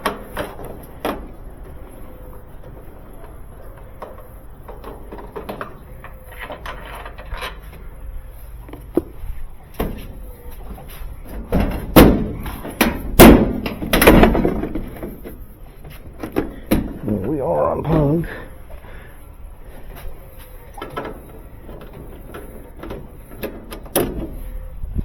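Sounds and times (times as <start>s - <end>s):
loud bangs on metal cabinet: 11.5s - 14.7s.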